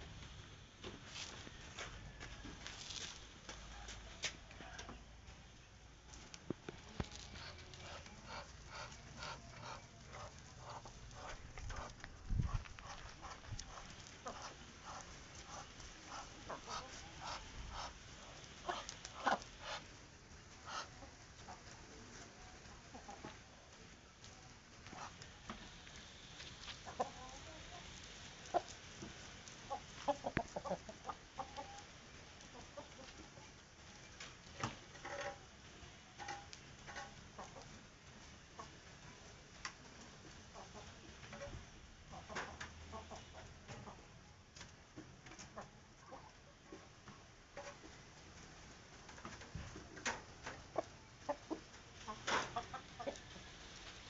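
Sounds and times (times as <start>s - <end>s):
chickens clucking: 6.7s - 21.9s, 22.6s - 23.8s, 24.4s - 33.6s, 36.2s - 39.0s, 40.0s - 44.2s, 45.0s - 48.3s, 49.0s - 54.0s.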